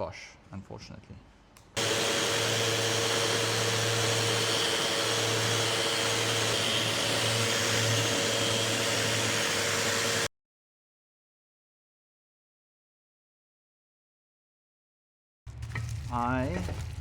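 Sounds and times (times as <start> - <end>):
orbital sander sanding wood: 1.8 - 10.3.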